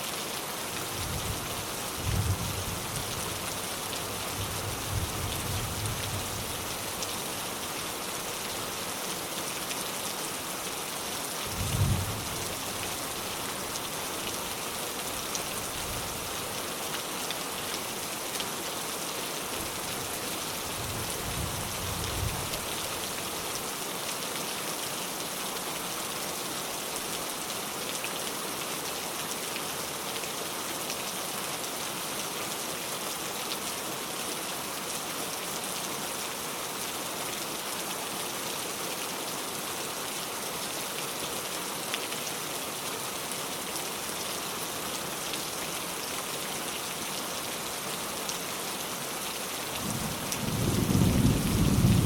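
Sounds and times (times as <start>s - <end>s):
steady rain falling: 0.0s - 52.0s
distant thunder rumbling: 49.8s - 52.0s.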